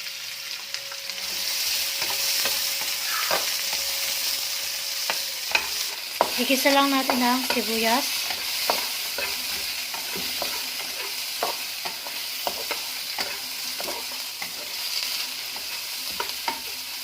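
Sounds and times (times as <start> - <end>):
onions sizzling in oil: 0.0 - 17.0
utensil scraping a pan: 5.1 - 16.8.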